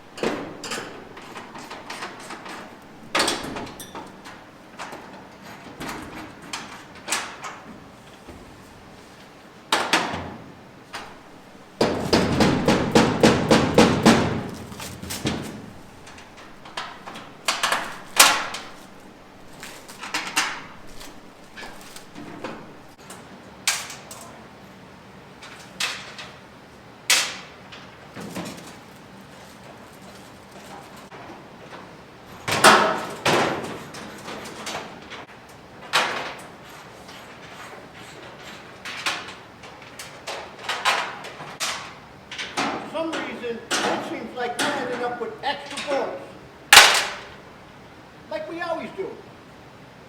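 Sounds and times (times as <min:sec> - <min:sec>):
sheet metal clanking: 0:00.0 - 0:07.0, 0:11.0 - 0:23.0
rapid metal strikes: 0:11.8 - 0:14.6.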